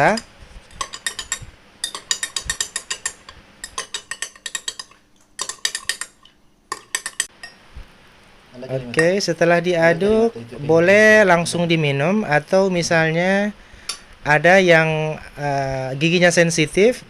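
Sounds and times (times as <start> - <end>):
spoon clinking against container: 0.0 - 7.6.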